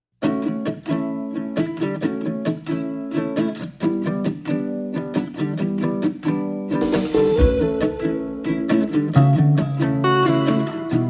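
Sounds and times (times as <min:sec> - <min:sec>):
acoustic guitar strummed: 0:03.9 - 0:11.0.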